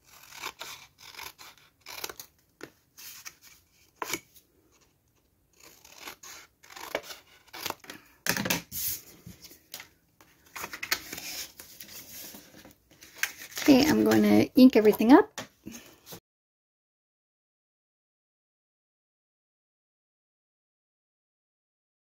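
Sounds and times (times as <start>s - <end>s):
paper being cut and handled: 0.0s - 4.3s, 5.5s - 8.1s, 10.6s - 15.1s.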